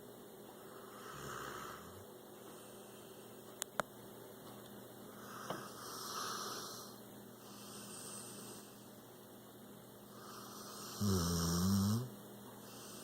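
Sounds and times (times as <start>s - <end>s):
dog snoring softly: 0.6s - 3.2s, 10.1s - 13.0s.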